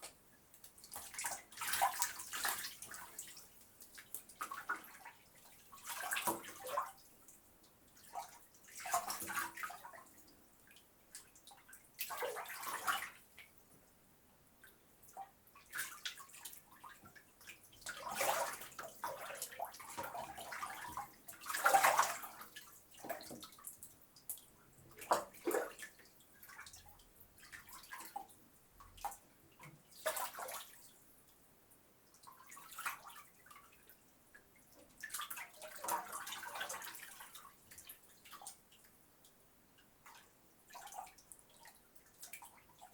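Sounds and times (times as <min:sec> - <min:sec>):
bath water splashing: 0:17.8 - 0:22.4.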